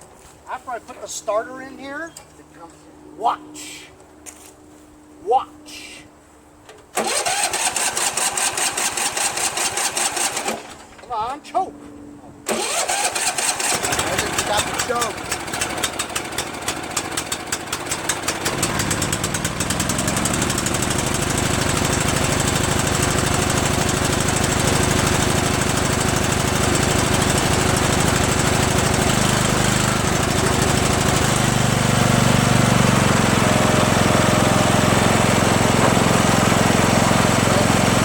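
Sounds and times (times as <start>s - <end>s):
lawn tractor engine starting: 6.7s - 11.2s, 12.4s - 38.0s.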